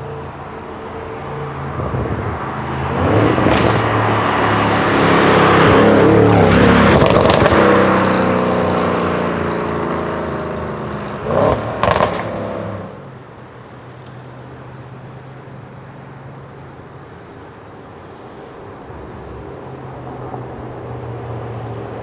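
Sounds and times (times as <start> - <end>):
car accelerating past: 1.6 - 13.0
sharp exhaust bangs: 1.8 - 9.0, 11.2 - 12.8.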